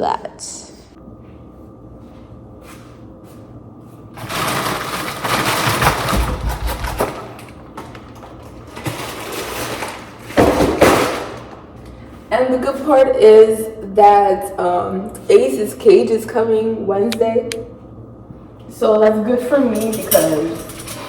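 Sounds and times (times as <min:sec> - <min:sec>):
household items rustling and scraping: 0:04.2 - 0:11.0, 0:19.6 - 0:21.0.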